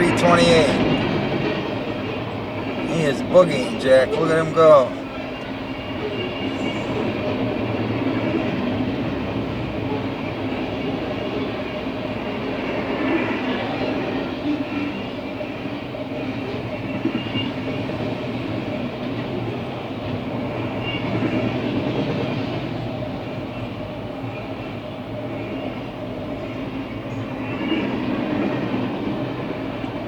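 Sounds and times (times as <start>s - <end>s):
freight train passing: 0.0s - 30.0s.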